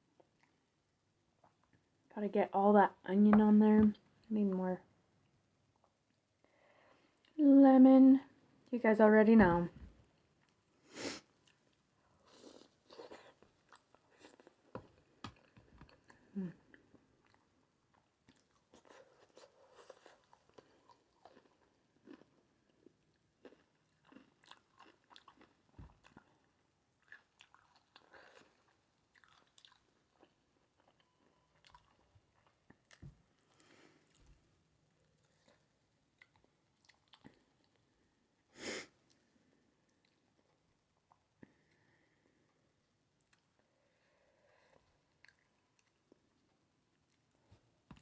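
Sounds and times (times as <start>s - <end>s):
person chewing food: 11.4s - 34.5s, 35.1s - 38.0s, 44.6s - 48.0s.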